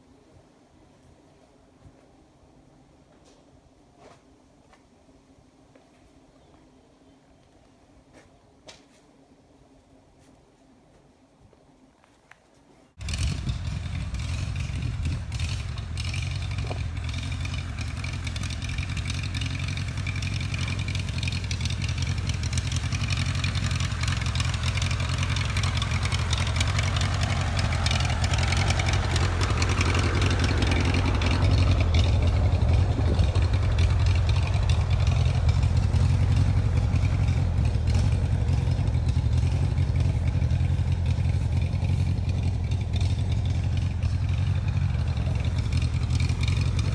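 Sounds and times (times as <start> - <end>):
engine rumbling: 12.9 - 46.9.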